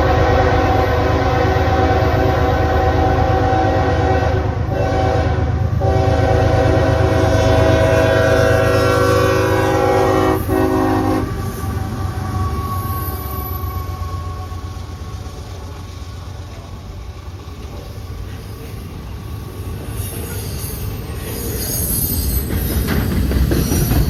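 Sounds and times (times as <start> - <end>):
locomotive air horn: 0.0 - 14.6
train rumble: 0.0 - 24.0.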